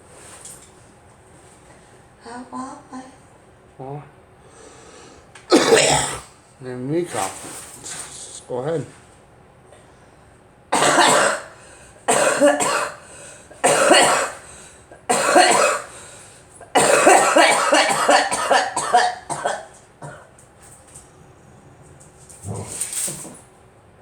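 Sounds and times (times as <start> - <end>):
girl coughing: 5.5 - 6.3, 10.8 - 16.0, 16.6 - 20.3.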